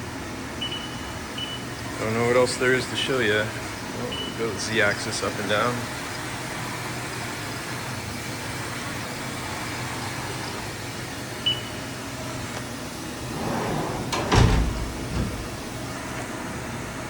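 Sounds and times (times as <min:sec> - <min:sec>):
milling machine humming: 0:13.0 - 0:17.0.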